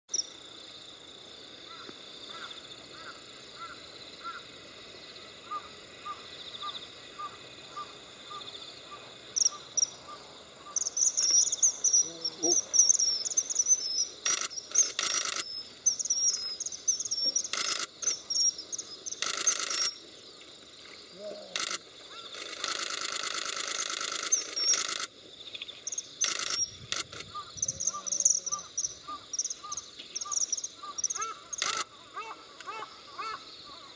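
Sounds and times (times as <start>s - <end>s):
crickets droning: 0.1s - 33.9s
kingfishers calling shrilly: 5.4s - 20.0s, 25.9s - 33.8s
short bursts of noise: 11.2s - 20.1s, 21.2s - 25.2s, 25.9s - 28.8s, 31.2s - 32.0s.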